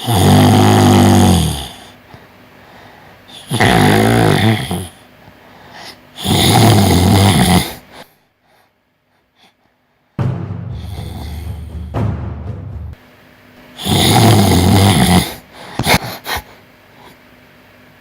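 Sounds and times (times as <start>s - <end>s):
person snoring loudly: 0.0s - 2.0s, 3.3s - 5.0s, 6.2s - 8.0s, 10.8s - 11.9s, 13.8s - 16.0s
quiet breath: 1.8s - 3.4s, 5.0s - 6.1s, 7.8s - 10.1s.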